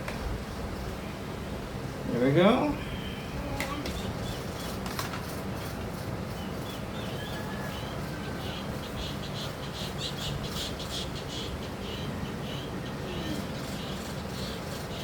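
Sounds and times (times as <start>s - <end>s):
small animals chirping: 6.3s - 15.0s.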